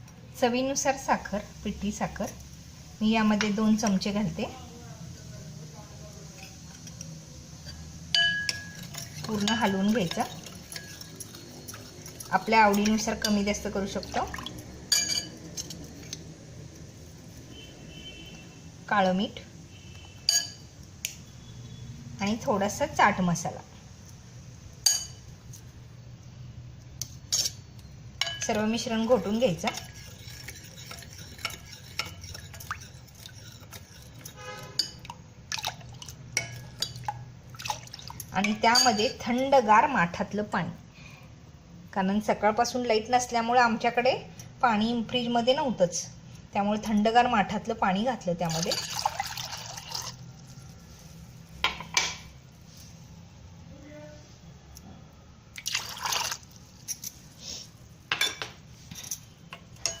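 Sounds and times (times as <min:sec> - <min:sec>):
spoon clinking in a vessel: 0:08.1 - 0:16.2, 0:20.3 - 0:20.7, 0:24.8 - 0:25.3, 0:27.3 - 0:39.5, 0:48.4 - 0:50.2, 0:58.1 - 1:00.0
water pouring into a vessel: 0:37.5 - 0:38.3, 0:48.4 - 0:50.5, 0:55.6 - 0:56.6.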